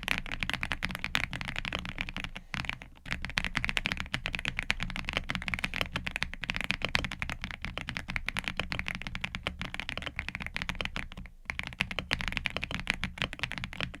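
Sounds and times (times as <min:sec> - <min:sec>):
fast mechanical keyboard typing: 0:00.0 - 0:14.0.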